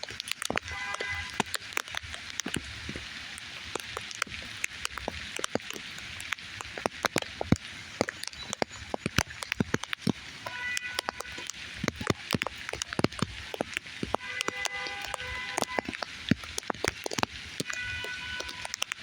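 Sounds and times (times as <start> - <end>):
rain falling: 0.0 - 19.0.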